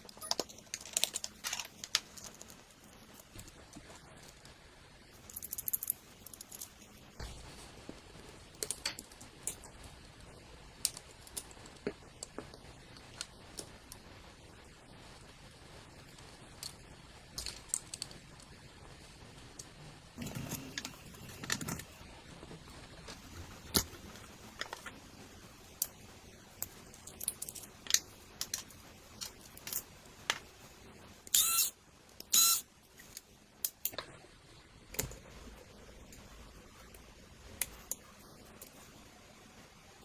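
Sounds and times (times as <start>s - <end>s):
small parts clicking and clattering: 0.0s - 7.3s, 7.9s - 10.0s, 10.7s - 14.1s, 16.0s - 18.6s, 23.0s - 34.1s.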